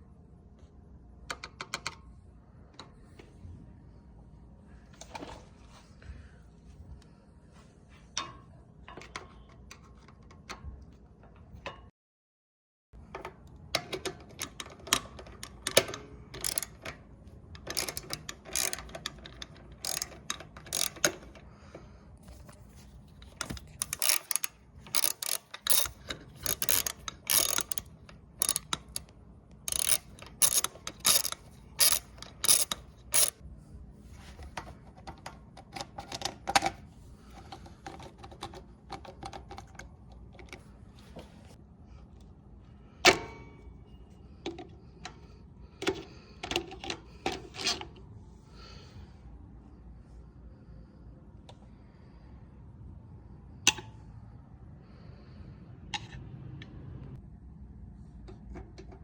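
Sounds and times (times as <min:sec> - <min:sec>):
small parts and tools clattering: 0:17.6 - 0:33.4.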